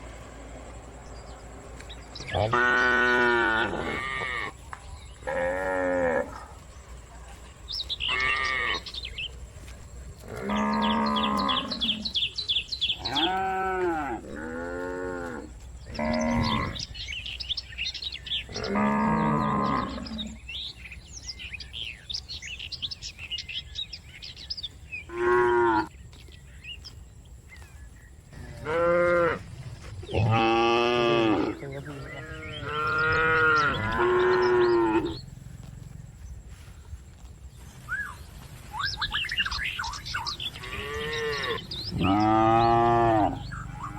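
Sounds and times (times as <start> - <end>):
cattle mooing: 2.2 - 4.5, 8.1 - 8.9, 10.3 - 12.2, 13.0 - 16.9, 18.5 - 20.4, 28.4 - 29.4, 30.1 - 35.4, 40.3 - 43.9.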